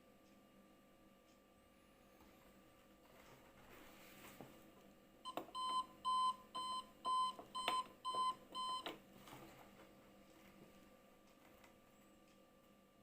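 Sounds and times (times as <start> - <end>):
clock alarm beeps: 5.3 - 8.9.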